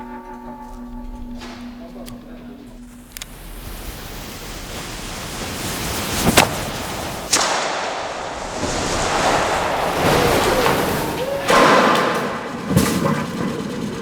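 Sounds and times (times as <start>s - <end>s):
sharp cracks: 1.5s - 14.0s
gunpowder burning hiss: 2.7s - 12.5s.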